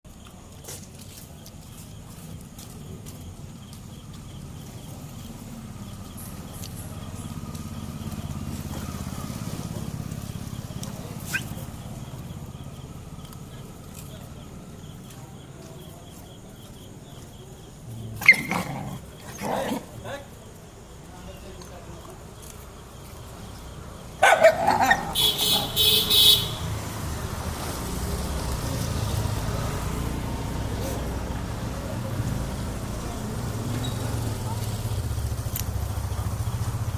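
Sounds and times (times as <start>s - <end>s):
dog growling: 17.9s - 20.2s
dog barks or yelps: 18.2s - 19.6s, 24.2s - 25.8s.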